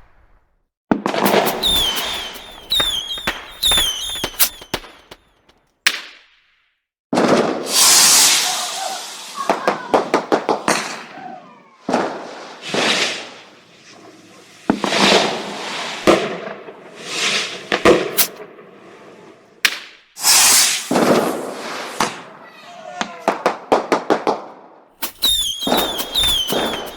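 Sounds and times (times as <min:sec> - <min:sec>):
fireworks cracks and bangs: 0:00.0 - 0:06.2, 0:07.1 - 0:26.9
fireworks hissing: 0:01.2 - 0:05.3, 0:07.6 - 0:11.0, 0:11.9 - 0:16.3, 0:16.9 - 0:18.4, 0:20.2 - 0:22.2, 0:25.0 - 0:26.9.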